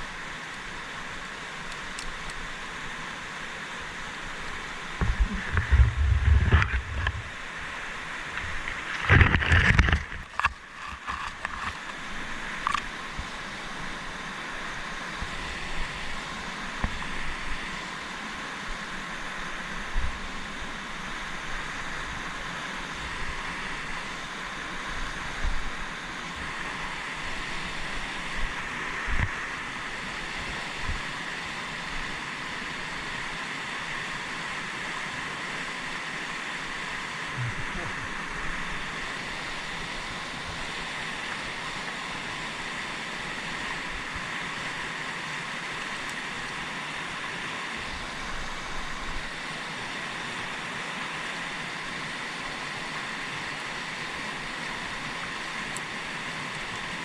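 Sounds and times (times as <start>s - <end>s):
river rushing: 0.0s - 57.0s
low thumps: 5.0s - 7.3s.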